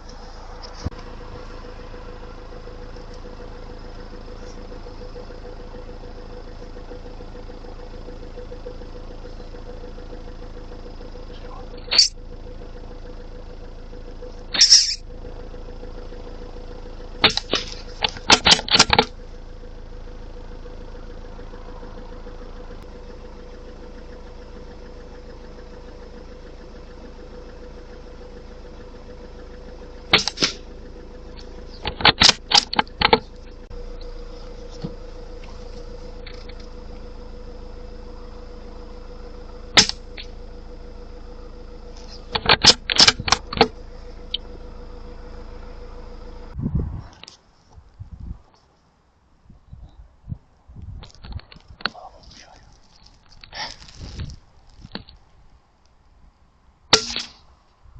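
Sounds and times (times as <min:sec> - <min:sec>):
steady low hum: 0:00.0 - 0:57.9
suppressed rifle shots: 0:30.1 - 0:30.6, 0:39.8 - 0:40.1, 0:56.9 - 0:57.4.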